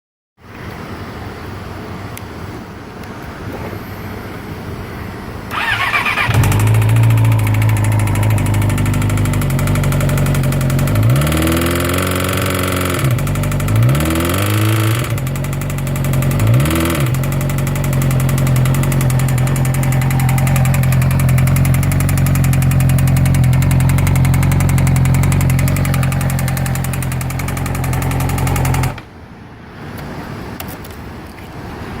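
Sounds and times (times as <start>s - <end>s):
engine knocking: 5.5s - 29.0s
motorcycle engine starting and revving: 5.5s - 29.1s.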